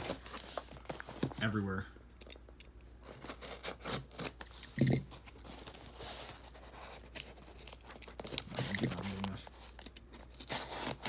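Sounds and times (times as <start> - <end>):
tape tearing: 0.0 - 1.4, 3.0 - 11.0
knife scraping through packing tape: 3.0 - 4.6, 5.4 - 11.0.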